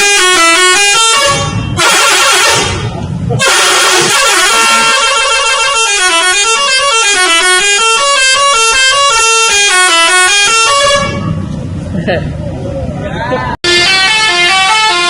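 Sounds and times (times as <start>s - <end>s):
bus musical horn melody: 0.0s - 11.5s, 13.6s - 15.0s
low engine rumble: 0.2s - 7.5s, 9.8s - 13.6s.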